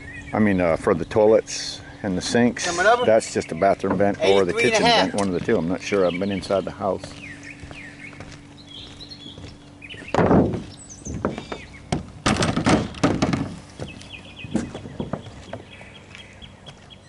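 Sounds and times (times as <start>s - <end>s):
roofing knocks and thuds: 9.4s - 15.8s.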